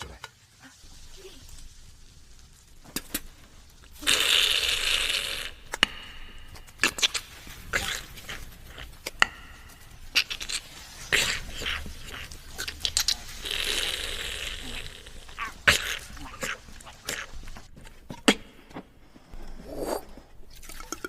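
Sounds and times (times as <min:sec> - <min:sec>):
mouth hiss like sizzling: 0:00.0 - 0:17.7, 0:19.2 - 0:20.7
beatboxed mouth clicks and cracks: 0:03.9 - 0:18.4.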